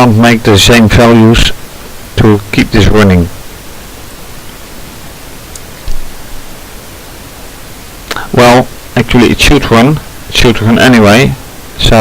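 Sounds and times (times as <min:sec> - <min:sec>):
steady background hiss: 0:00.0 - 0:12.0.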